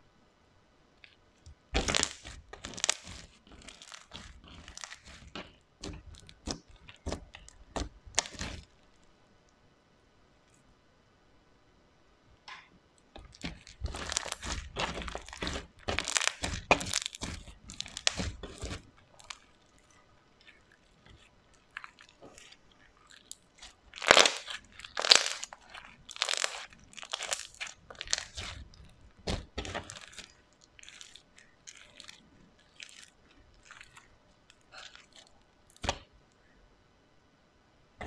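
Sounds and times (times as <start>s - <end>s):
crunchy slime being squeezed: 1.7s - 8.9s, 13.2s - 36.1s.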